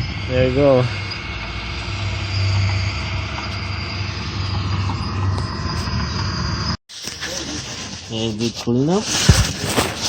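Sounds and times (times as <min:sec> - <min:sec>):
engine droning: 0:00.0 - 0:06.8
high whine: 0:00.0 - 0:07.4.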